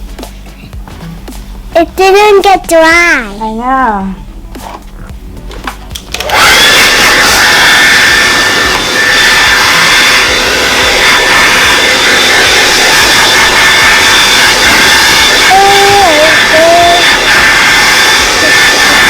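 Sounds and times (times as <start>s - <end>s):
hair dryer running: 5.6s - 19.0s.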